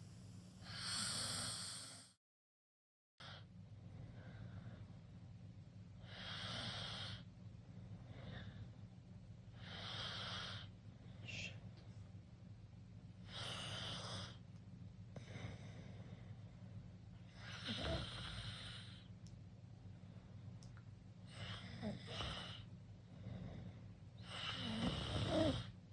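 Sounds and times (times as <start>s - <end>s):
steady low hum: 0.0s - 2.2s, 3.2s - 25.9s
person snoring: 0.6s - 2.1s, 24.2s - 25.7s.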